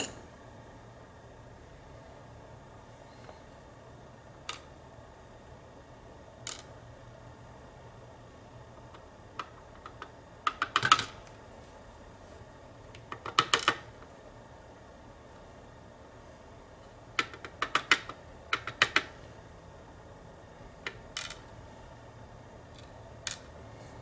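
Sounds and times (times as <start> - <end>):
small hard parts clicking: 6.4 - 6.7, 13.0 - 13.9, 17.2 - 19.1, 20.8 - 21.4, 22.7 - 23.5.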